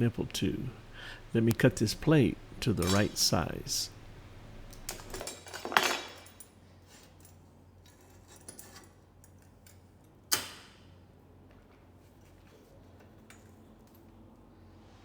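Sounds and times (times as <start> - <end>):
metal clinks and knocks: 2.7 - 3.4, 4.7 - 7.4
metal clank ringing: 2.7 - 3.5.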